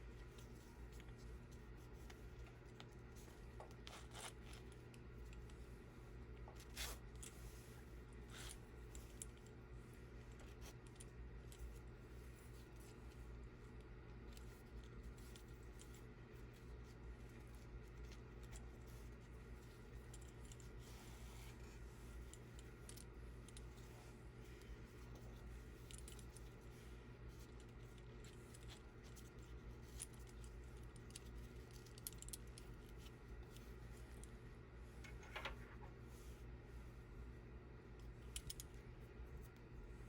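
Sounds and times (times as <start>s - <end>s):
faint clicks and scratching: 0.0s - 40.0s
low electrical hum: 0.0s - 40.0s.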